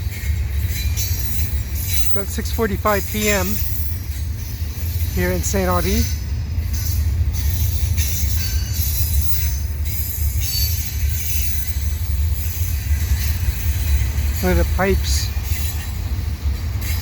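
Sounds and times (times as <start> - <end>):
freight train cars rumbling: 0.0 - 17.0.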